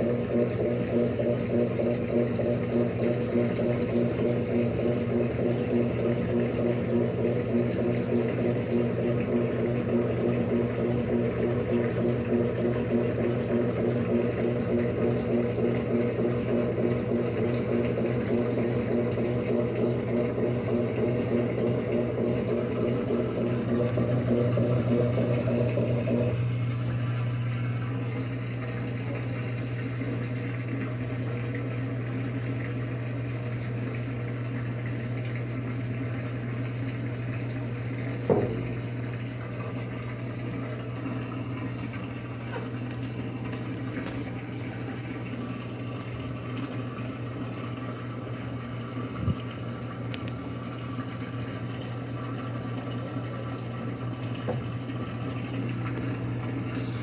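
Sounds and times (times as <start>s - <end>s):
steady motor hum: 0.0s - 57.0s
washing machine churning: 0.0s - 57.0s.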